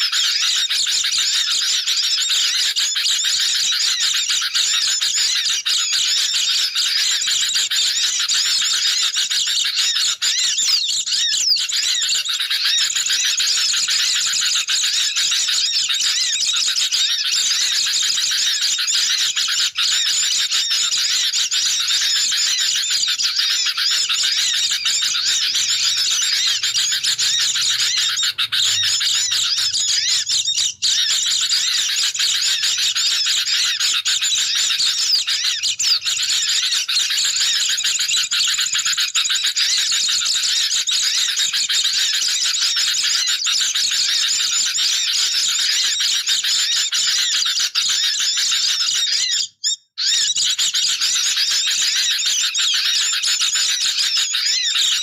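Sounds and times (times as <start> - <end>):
high bird twittering: 0.0 - 55.0
bulbuls chattering: 17.4 - 38.0.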